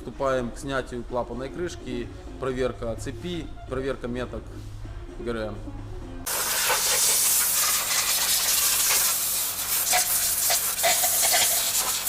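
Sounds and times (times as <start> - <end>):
loud steady rushing hiss: 6.3 - 12.0.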